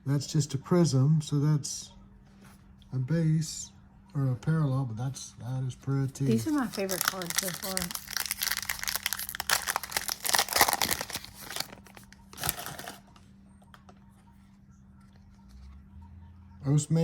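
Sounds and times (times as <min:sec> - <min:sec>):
plastic wrapper crinkling and tearing: 0:06.3 - 0:13.2.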